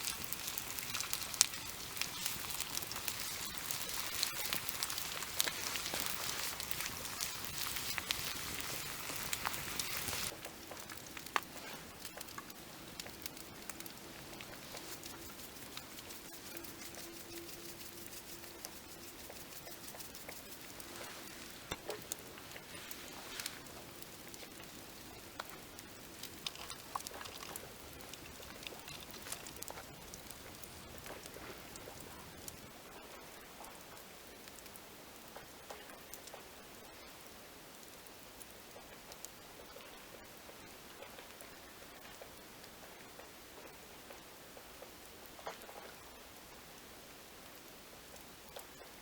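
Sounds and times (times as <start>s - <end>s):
frying pan sizzling: 0.0s - 31.3s
campfire crackles and pops: 0.0s - 49.0s.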